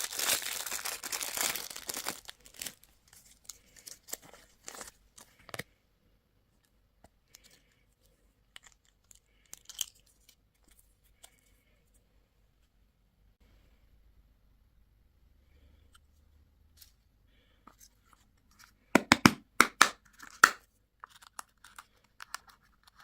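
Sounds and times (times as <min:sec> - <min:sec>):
candy wrapper crinkling: 0:00.0 - 0:05.6, 0:08.5 - 0:10.9.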